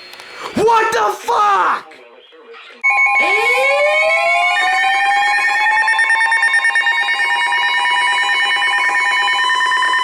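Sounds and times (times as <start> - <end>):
siren-like wail: 2.9 - 10.0.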